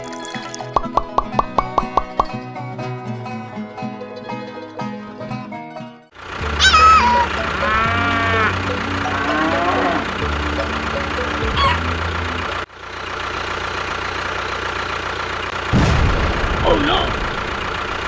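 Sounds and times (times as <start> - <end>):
small engine running: 6.2 - 15.8
rising and falling calls: 6.5 - 12.0.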